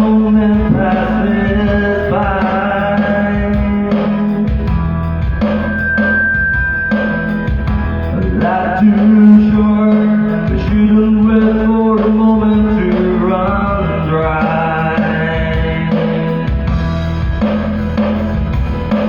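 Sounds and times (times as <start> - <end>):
man singing: 0.0 - 4.7, 8.1 - 16.6
guitar and band accompaniment: 0.0 - 19.0.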